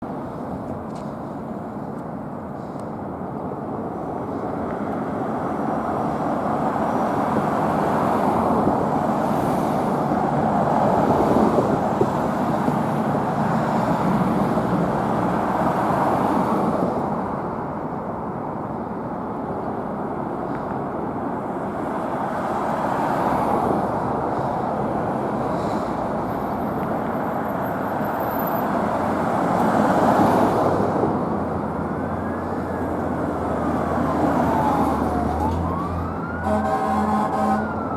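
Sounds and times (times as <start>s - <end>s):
road traffic passing: 0.0s - 37.9s
fire engine siren wailing: 31.6s - 37.9s.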